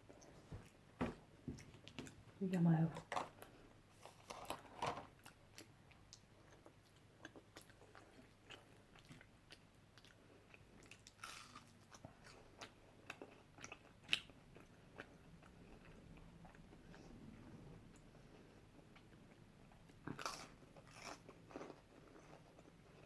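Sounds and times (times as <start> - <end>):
chewing and mouth sounds: 5.2 - 23.0.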